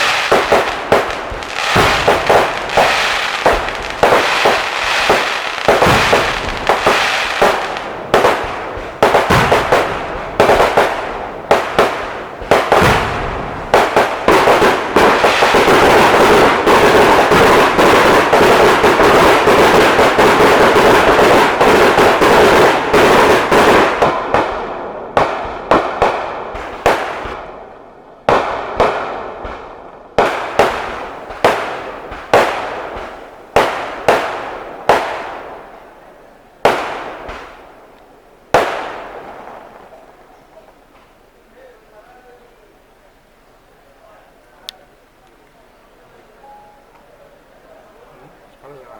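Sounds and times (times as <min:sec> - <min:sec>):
fireworks bangs echoing: 0:00.0 - 0:40.2.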